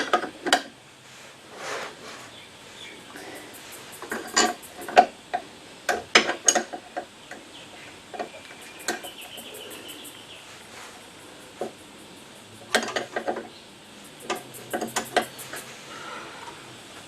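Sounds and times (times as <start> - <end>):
metal tools clinking: 3.6 - 5.0.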